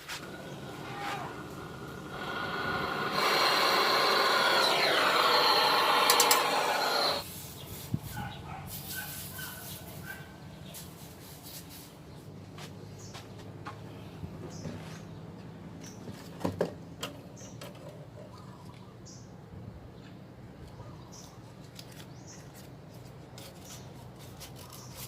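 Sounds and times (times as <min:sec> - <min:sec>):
loud gas hiss: 0:00.2 - 0:07.5.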